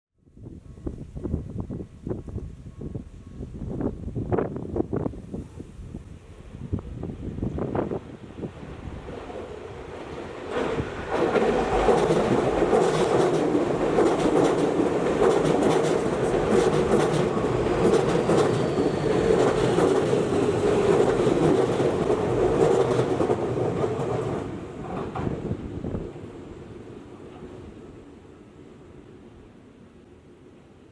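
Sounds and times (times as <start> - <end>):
electric train passing: 6.2 - 29.8
wheels clacking over rail joints: 9.2 - 25.5.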